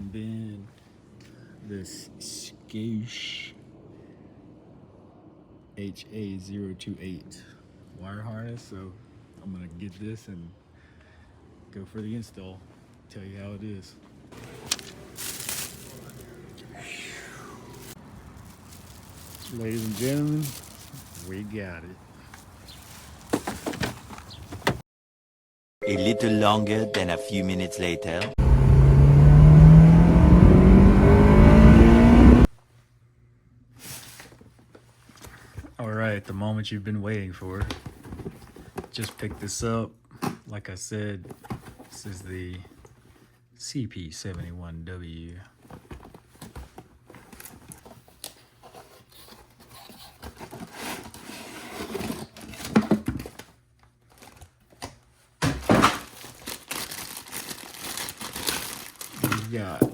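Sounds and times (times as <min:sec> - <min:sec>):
wrapping crinkling and tearing: 0:14.4 - 0:16.6, 0:17.7 - 0:21.5, 0:22.3 - 0:23.3, 0:56.0 - 0:59.6
faint rustle: 0:14.4 - 0:17.0, 0:17.6 - 0:24.4
car engine accelerating: 0:28.3 - 0:32.5.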